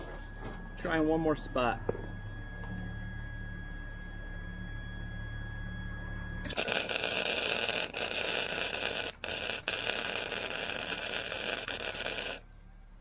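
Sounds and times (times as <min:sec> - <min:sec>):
welder machine hum: 0:06.4 - 0:12.4
welding arc crackling: 0:06.4 - 0:12.4.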